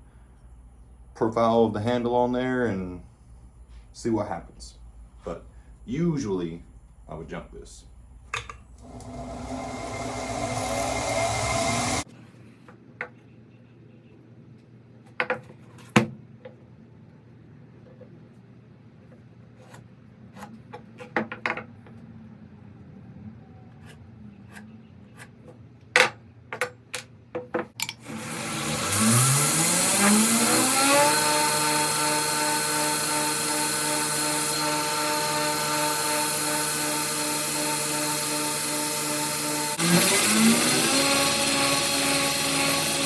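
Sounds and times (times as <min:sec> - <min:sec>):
belt grinder motor whine: 0:08.8 - 0:12.0, 0:28.0 - 0:43.0.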